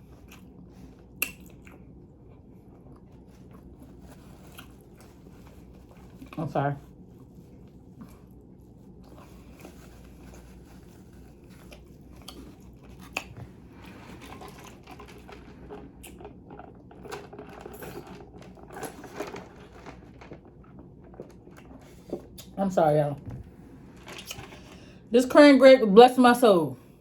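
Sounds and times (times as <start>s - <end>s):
person chewing food: 0.0s - 6.4s, 7.2s - 22.5s, 23.5s - 24.8s
mouth and handling noises: 2.9s - 22.6s, 23.2s - 25.0s.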